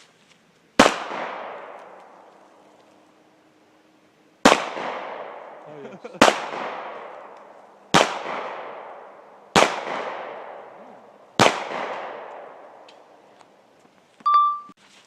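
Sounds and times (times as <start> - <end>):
pistol shots with echo: 0.8 - 2.2, 4.4 - 10.8, 11.4 - 12.9.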